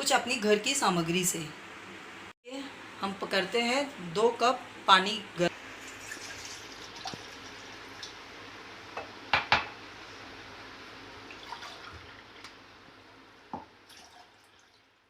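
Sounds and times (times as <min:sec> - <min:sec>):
water pouring into a pot: 0:05.8 - 0:08.2, 0:11.2 - 0:12.5, 0:13.8 - 0:15.0.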